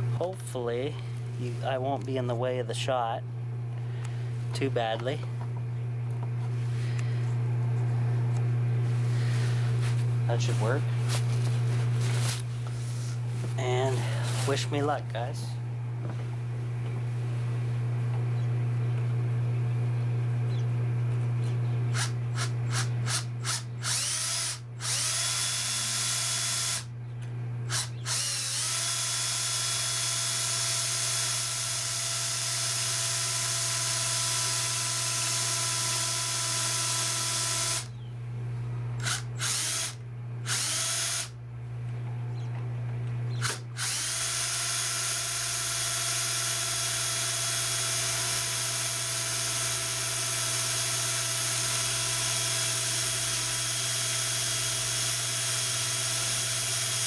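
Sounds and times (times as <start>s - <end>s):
power drill boring: 21.9s - 26.9s, 27.7s - 37.9s, 39.0s - 41.4s, 43.4s - 57.0s.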